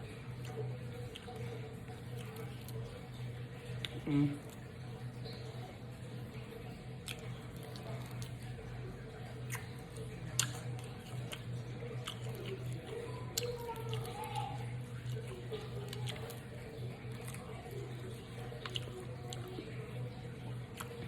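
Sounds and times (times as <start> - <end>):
chewing and biting food: 0.0 - 21.0
steady low hum: 0.0 - 21.0
wet mouth clicks and smacks: 9.4 - 14.0.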